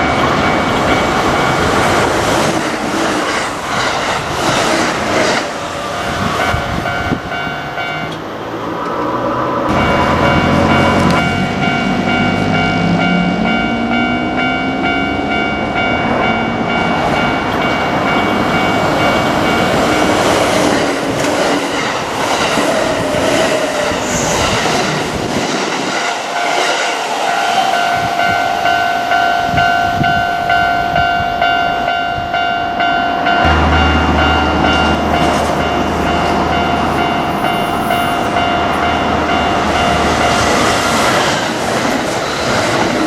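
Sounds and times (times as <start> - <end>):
level crossing bell ringing: 9.7 - 20.2, 27.7 - 40.6
train motor whine: 33.4 - 40.9.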